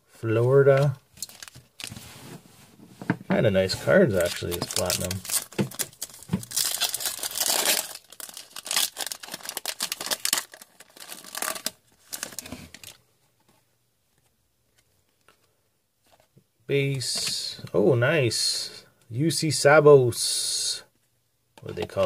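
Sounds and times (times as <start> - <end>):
wrapper crinkling and tearing: 1.2 - 1.9, 4.1 - 13.0.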